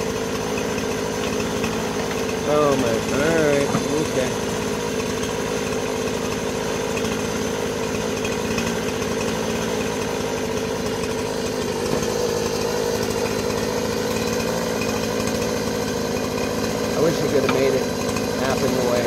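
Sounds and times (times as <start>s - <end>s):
chainsaw engine running: 0.0s - 19.0s.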